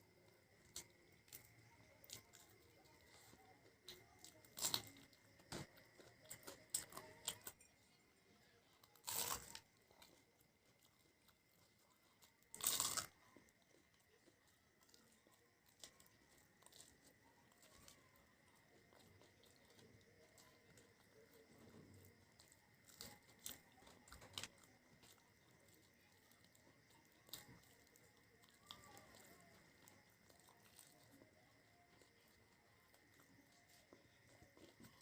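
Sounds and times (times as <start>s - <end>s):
crunchy bites of fried snacks: 0.6s - 7.7s, 8.8s - 18.0s, 21.4s - 31.2s.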